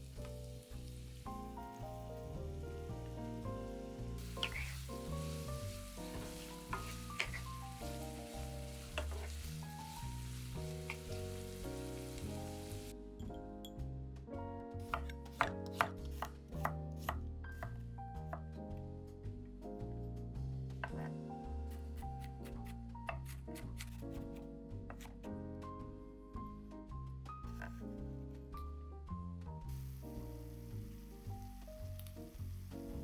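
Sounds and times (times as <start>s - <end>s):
food sizzling in a frying pan: 0.0s - 12.9s, 29.7s - 33.0s
soft background music: 0.0s - 33.0s.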